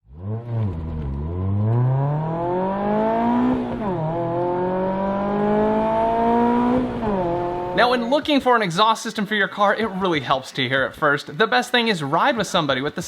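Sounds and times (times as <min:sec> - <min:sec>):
car engine accelerating: 0:00.0 - 0:07.8.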